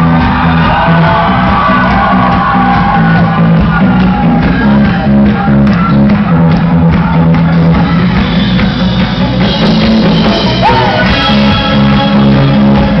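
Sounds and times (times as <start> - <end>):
rock band playing live: 0.0 - 13.0.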